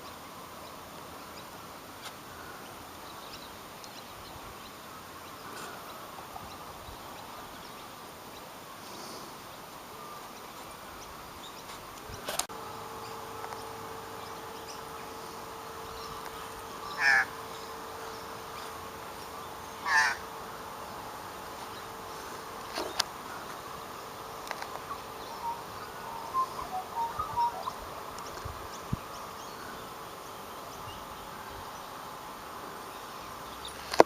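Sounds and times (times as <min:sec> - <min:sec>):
faint hum: 0:00.0 - 0:34.0
small birds chirping: 0:00.0 - 0:34.0
loud bird calls: 0:08.8 - 0:34.0.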